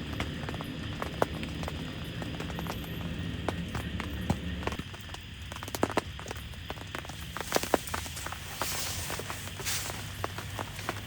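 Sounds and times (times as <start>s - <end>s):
hiss of rainfall: 7.0s - 11.0s.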